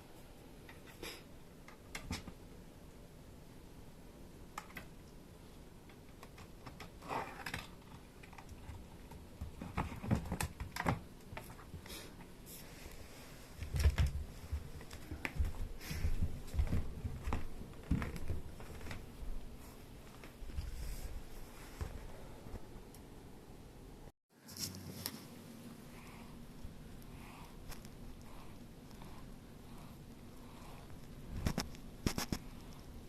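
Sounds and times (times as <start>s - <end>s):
kittens clicking and tapping: 5.8s - 11.9s.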